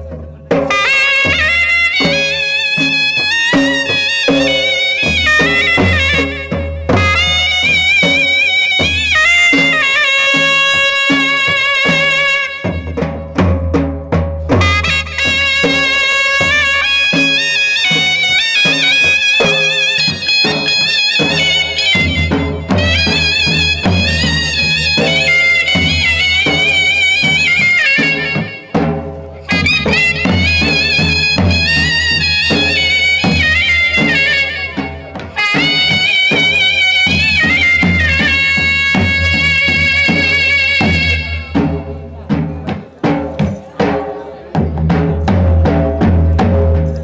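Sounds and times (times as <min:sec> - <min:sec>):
steady drum beat: 0:00.0 - 0:47.0.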